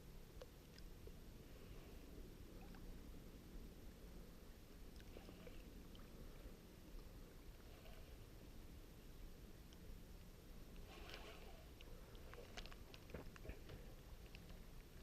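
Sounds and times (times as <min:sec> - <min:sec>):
low rumble of wind and water: 0:00.0 - 0:15.0.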